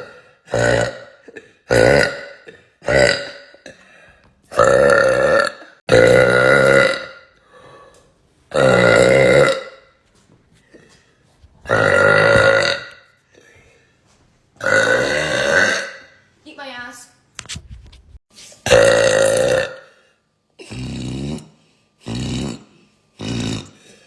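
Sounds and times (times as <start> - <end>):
woman burping: 0.0 - 3.8, 4.5 - 7.3, 8.5 - 9.9, 11.7 - 13.1, 14.6 - 16.2, 18.6 - 19.9, 20.6 - 23.8.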